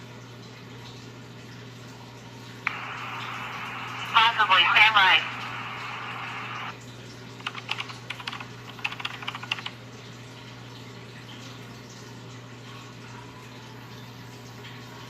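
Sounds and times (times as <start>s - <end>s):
faint low hum: 1.8s - 6.8s.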